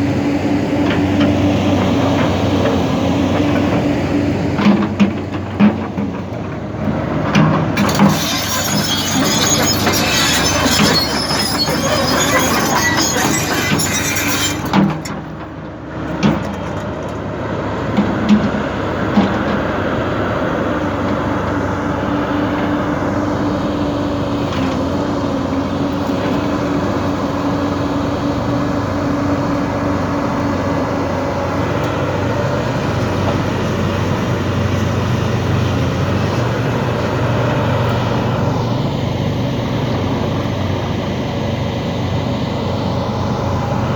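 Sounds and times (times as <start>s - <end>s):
excavator engine droning: 0.0s - 17.1s
excavator grinding: 0.2s - 18.3s.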